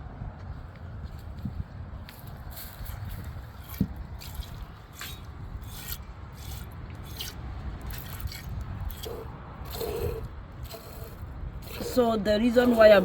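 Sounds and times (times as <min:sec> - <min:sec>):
milk squirting into a container: 0:07.9 - 0:12.0.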